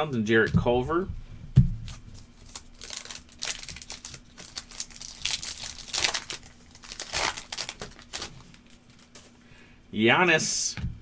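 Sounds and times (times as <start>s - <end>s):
faint steady hum: 0.0s - 11.0s
crackling handling sounds: 1.8s - 9.7s
wrapper tearing and crinkling: 1.9s - 9.3s.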